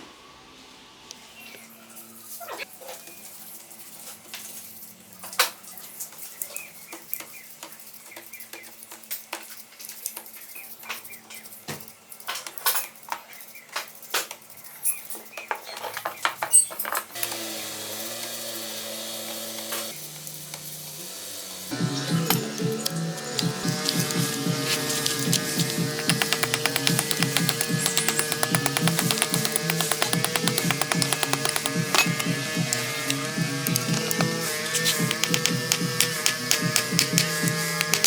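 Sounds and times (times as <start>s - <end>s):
background music: 21.7s - 38.0s
metal tools clinking and clattering: 22.0s - 38.0s.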